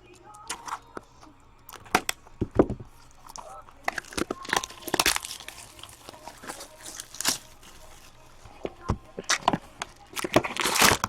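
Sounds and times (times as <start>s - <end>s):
packaging rustling and tearing: 2.8s - 11.0s.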